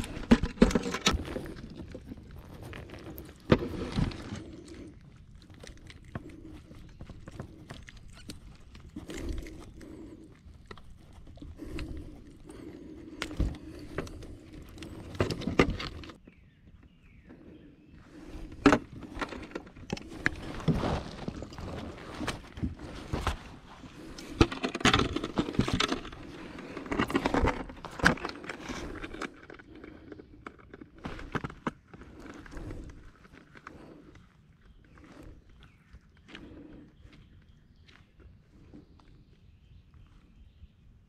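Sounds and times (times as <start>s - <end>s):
rustling: 18.1s - 30.0s.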